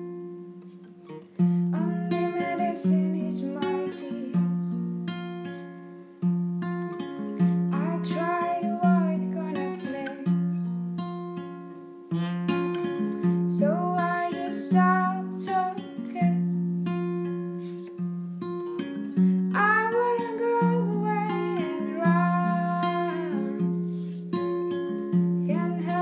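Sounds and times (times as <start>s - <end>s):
acoustic guitar chords: 0.0s - 26.0s
person singing: 1.7s - 4.8s, 7.7s - 10.7s, 13.5s - 16.5s, 19.5s - 24.0s, 25.4s - 26.0s.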